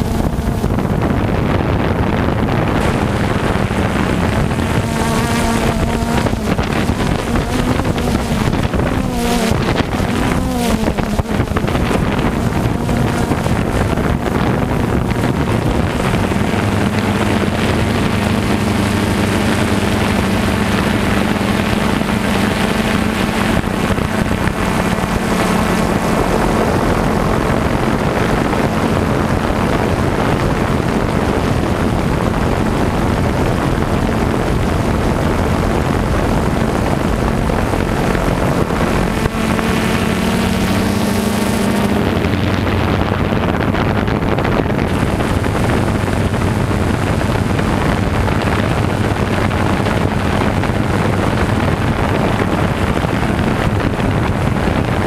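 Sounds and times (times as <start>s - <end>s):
constant rushing noise: 0.0s - 55.0s
engine humming: 0.0s - 55.0s.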